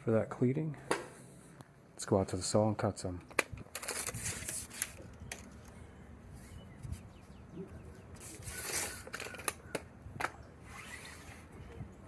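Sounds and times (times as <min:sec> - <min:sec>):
rubbing scrape: 0:08.2 - 0:09.4, 0:10.6 - 0:11.5.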